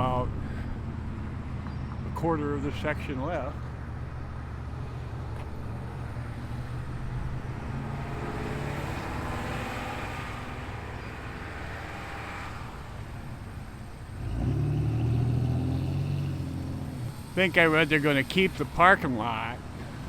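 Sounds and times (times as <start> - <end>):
low engine rumble: 0.0 - 8.0
loud low engine sound: 0.0 - 11.3, 13.0 - 20.0
vehicle passing by: 3.2 - 20.0.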